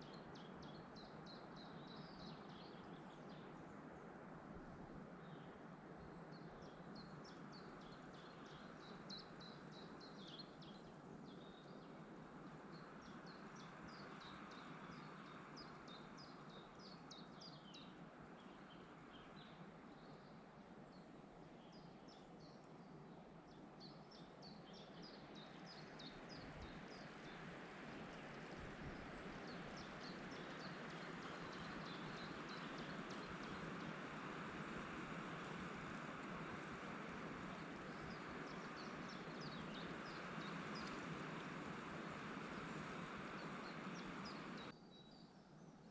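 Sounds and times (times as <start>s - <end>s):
birds chirping: 29.2s - 44.7s.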